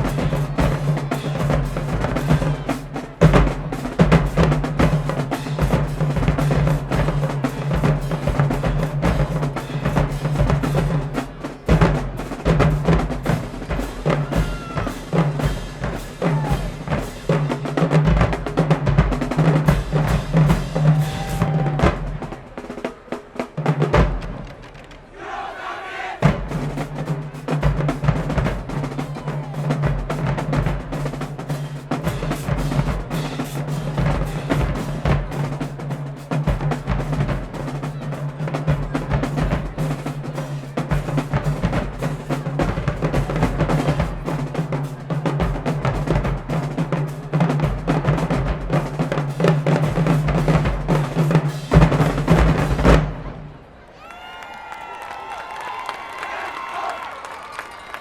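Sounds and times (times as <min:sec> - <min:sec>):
marching drumline cadence: 0:00.0 - 0:58.0
bass drum strokes: 0:26.2 - 0:53.6.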